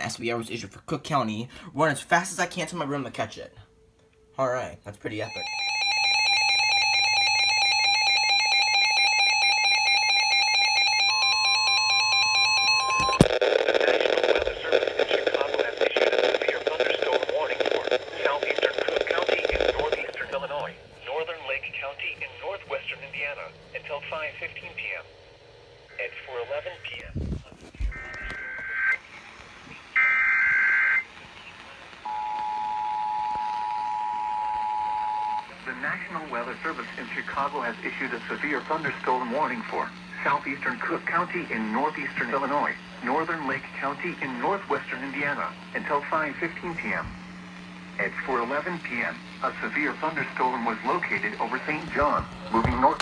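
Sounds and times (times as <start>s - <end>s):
higher steady tone: 5.2s - 13.3s
two-tone alert alarm: 5.2s - 13.3s
receiver click: 12.8s - 13.5s
steady two-tone attention signal: 32.0s - 39.6s.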